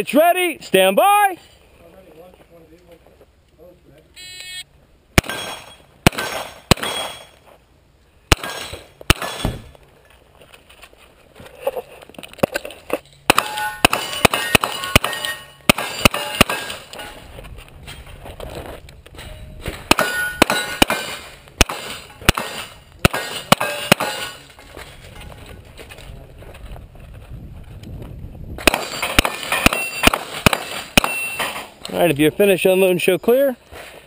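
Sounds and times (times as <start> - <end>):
steel targets ringing: 13.3 - 17.2, 19.2 - 24.5, 28.7 - 31.8
rapid gunshots: 28.6 - 31.2.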